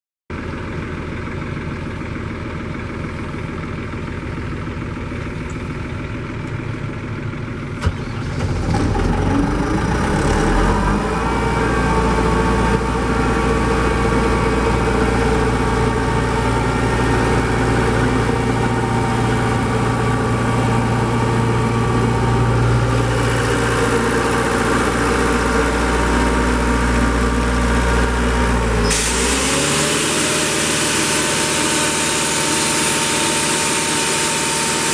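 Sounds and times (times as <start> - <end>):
diesel compressor engine running: 0.3 - 34.9
loud air hiss: 28.8 - 34.9.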